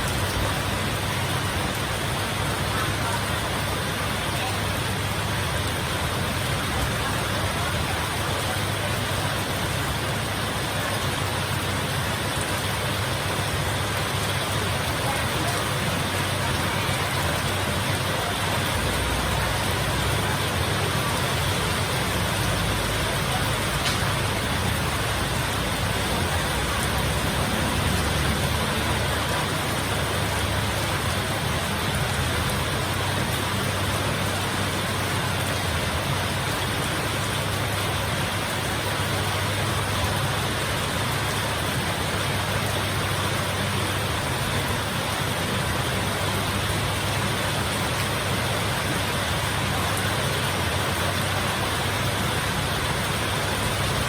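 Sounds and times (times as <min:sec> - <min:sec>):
heavy rain falling: 0:00.0 - 0:54.0.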